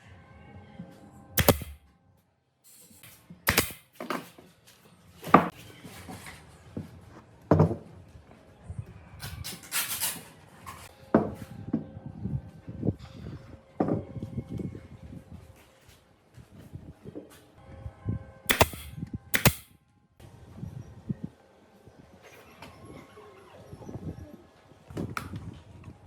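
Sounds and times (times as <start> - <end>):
wooden parts and tools clattering: 2.7 - 4.3.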